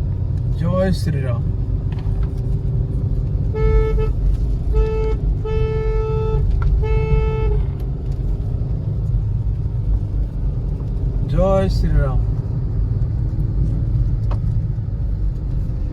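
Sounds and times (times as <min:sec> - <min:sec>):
car driving uphill rumble: 0:00.0 - 0:15.9
car horn toots: 0:03.5 - 0:07.7.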